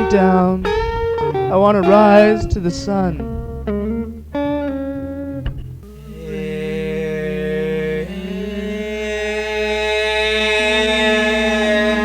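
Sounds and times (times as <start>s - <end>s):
voices droning chord: 0.0s - 12.0s
person humming held note: 5.8s - 12.0s.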